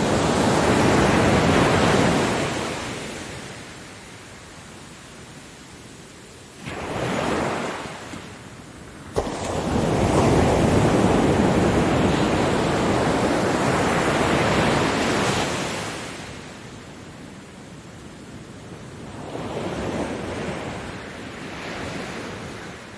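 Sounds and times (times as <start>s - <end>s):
ocean waves breaking: 0.0s - 3.8s, 6.6s - 8.4s, 9.0s - 16.6s.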